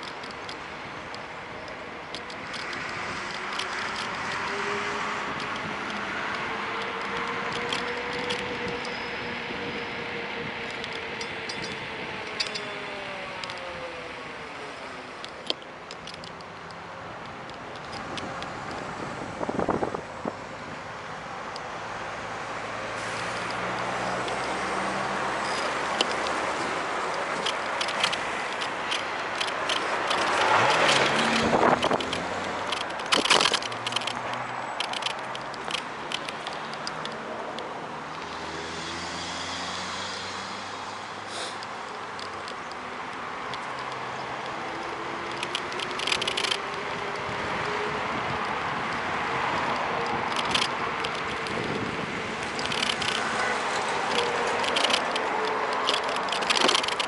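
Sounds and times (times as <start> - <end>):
passing traffic: 0.0 - 57.0
road and wind noise: 0.0 - 57.0
small clicks and rattles: 2.1 - 4.5, 5.3 - 8.9, 15.2 - 18.8, 25.5 - 38.3, 42.2 - 47.3, 49.5 - 57.0.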